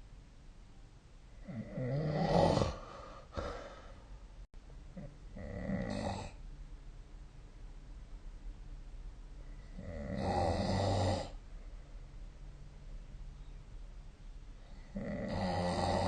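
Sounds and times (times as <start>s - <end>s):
rasping snores: 1.4s - 3.7s, 5.0s - 6.4s, 9.7s - 11.4s, 14.8s - 16.0s.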